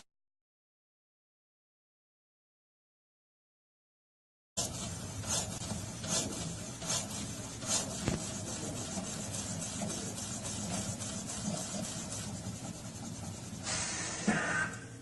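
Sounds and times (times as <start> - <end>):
scratchy rubbing strokes: 4.6 - 14.0.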